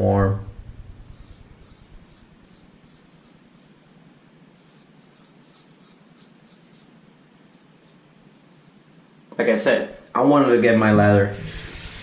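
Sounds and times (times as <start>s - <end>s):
shaving brush swishing lather: 1.0s - 3.8s, 4.6s - 6.9s.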